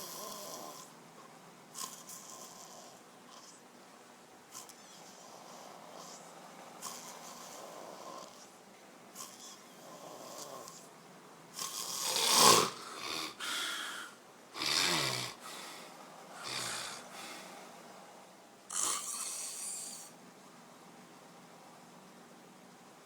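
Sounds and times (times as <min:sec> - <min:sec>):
man snoring loudly: 0:00.0 - 0:00.9, 0:11.6 - 0:13.6, 0:14.6 - 0:15.5, 0:16.4 - 0:17.1, 0:18.7 - 0:20.1.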